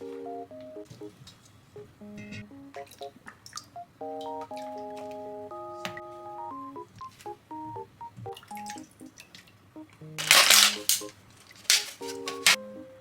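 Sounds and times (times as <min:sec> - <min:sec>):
plucky background music: 0:00.0 - 0:01.2, 0:01.8 - 0:13.0
loud rustling bursts: 0:10.2 - 0:12.6.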